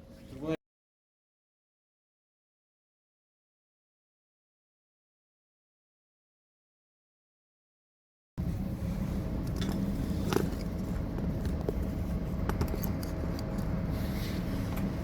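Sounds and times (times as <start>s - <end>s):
low background rumble: 8.4s - 15.0s.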